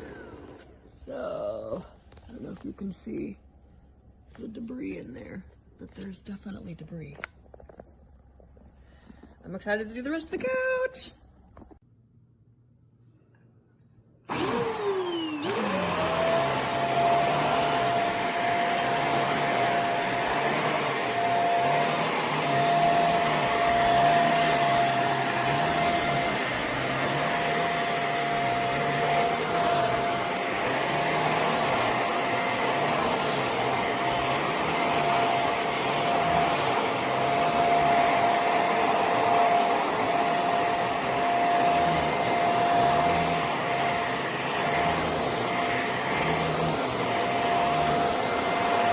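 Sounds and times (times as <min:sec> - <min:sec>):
handheld vacuum cleaner whining: 0:14.3 - 0:48.9.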